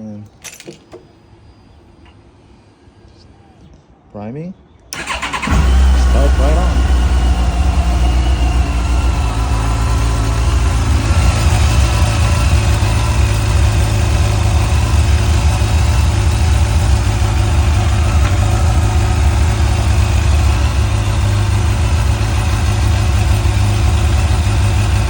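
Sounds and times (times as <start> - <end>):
motorcycle engine idling: 5.0 - 25.0.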